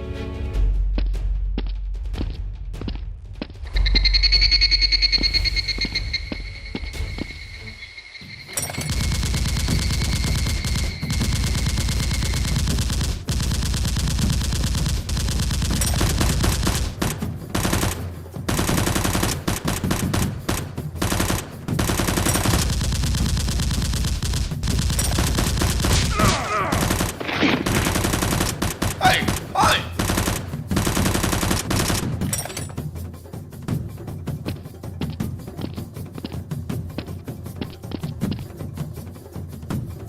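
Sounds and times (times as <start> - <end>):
rapid automatic gunfire: 8.9 - 32.3.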